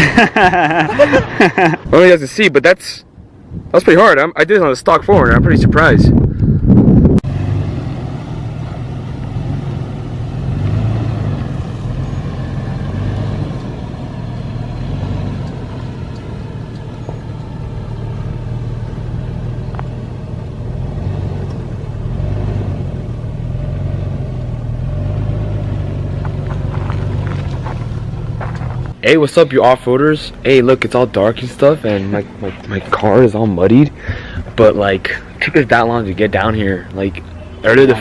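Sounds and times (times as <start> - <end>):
vehicle engine running at low revs: 6.2 - 29.0.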